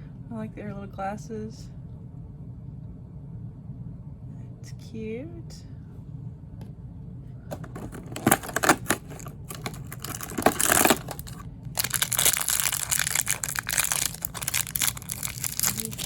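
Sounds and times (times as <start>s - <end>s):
packaging bag crinkling and tearing: 7.5s - 16.0s.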